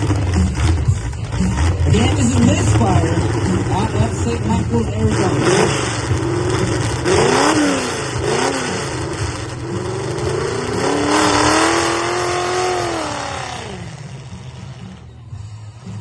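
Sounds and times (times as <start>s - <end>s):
engine revving: 0.0s - 16.0s.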